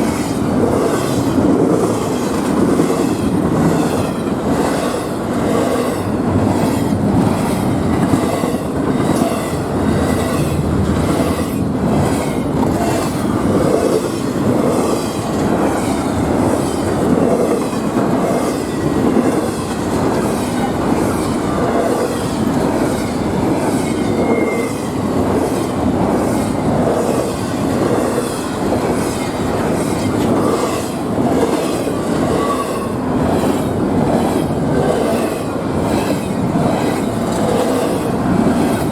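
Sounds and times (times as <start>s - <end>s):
train wheels clacking over rail joints: 0.0s - 38.9s
high wheel squeal: 21.5s - 25.2s.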